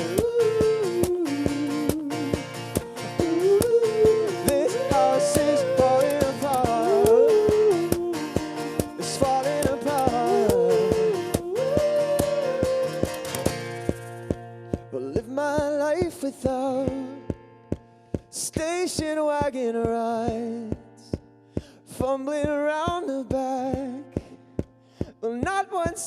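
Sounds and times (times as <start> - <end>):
sustained melody line: 0.0 - 14.7
sharp percussive hits: 0.0 - 14.9
strummed acoustic guitar: 0.0 - 26.0.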